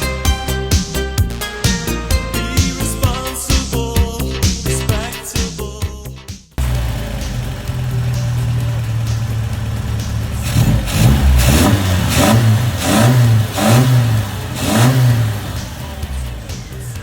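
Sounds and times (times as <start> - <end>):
car engine idling and revving: 6.6 - 17.0.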